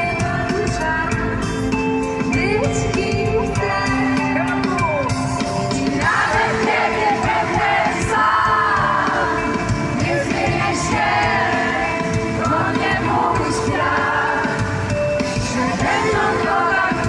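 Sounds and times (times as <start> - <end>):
crowd noise: 0.0 - 17.0
live pop band playing: 0.0 - 17.0
people singing: 5.7 - 17.0.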